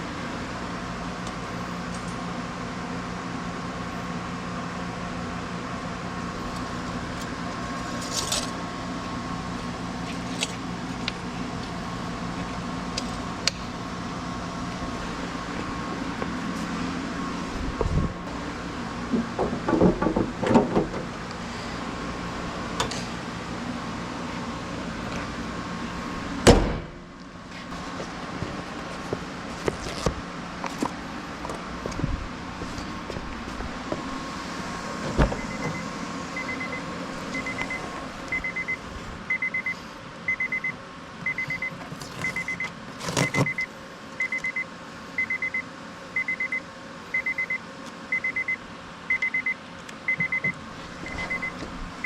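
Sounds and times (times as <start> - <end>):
mechanical hum: 0.0 - 52.0
clattering knocks: 19.1 - 21.1
loud thump: 26.4 - 27.0, 35.1 - 35.8.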